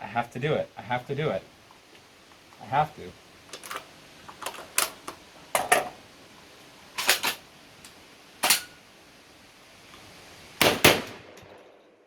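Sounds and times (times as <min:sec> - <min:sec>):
shotgun shots: 0:10.6 - 0:11.6.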